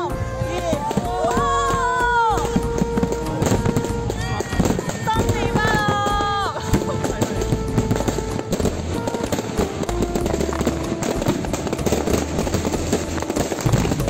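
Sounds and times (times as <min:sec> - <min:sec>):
background music: 0:00.0 - 0:14.0
fireworks crackling and popping: 0:00.0 - 0:14.0.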